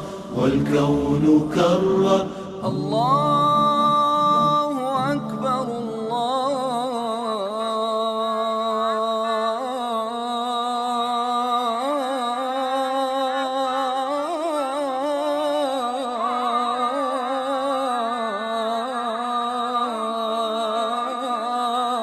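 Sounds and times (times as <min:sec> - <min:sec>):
person singing melismatic line: 0:02.6 - 0:07.6.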